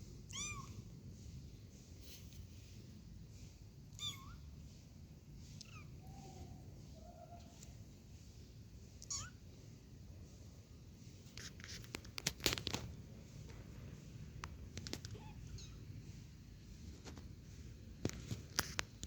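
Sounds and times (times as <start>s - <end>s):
kitten squeaking: 0.3s - 0.8s, 3.9s - 4.5s, 5.5s - 7.6s, 9.0s - 9.4s, 14.8s - 15.9s
kittens playing with clicks and scratches: 0.4s - 9.2s, 11.0s - 19.0s
kitten mewing: 9.0s - 9.4s.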